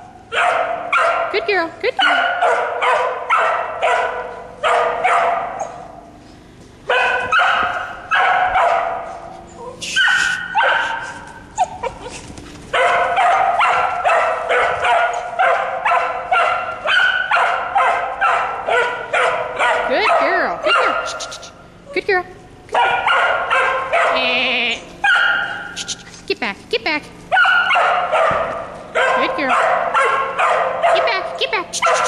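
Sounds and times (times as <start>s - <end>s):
dog barking sharply: 0.3s - 1.3s, 2.0s - 5.9s, 6.9s - 9.1s, 9.8s - 11.2s, 12.8s - 21.6s, 22.7s - 24.2s, 25.0s - 26.1s, 27.3s - 32.0s.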